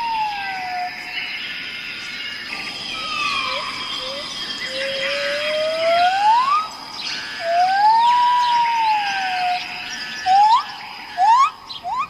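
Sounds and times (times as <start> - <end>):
birds twittering chirps: 0.0 - 12.0
insects buzzing: 0.0 - 12.0
bird whistling notes: 2.8 - 12.0.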